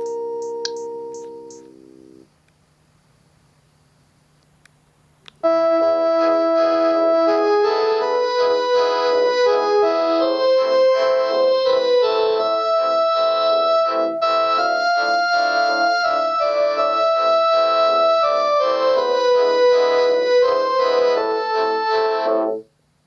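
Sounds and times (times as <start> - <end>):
phone ringtone melody: 0.0 - 2.2, 8.2 - 21.2.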